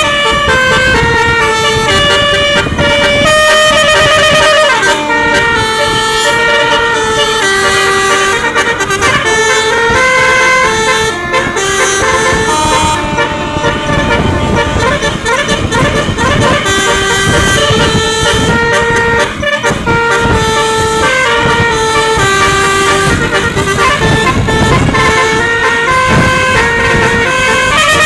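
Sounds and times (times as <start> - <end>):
bus melody horn: 0.0 - 28.0
low engine rumble: 0.0 - 28.0.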